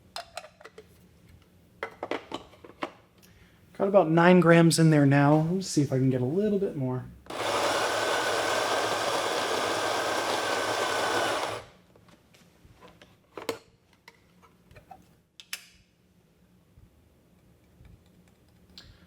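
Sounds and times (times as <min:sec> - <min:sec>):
coffee grinder running: 0:07.3 - 0:11.8.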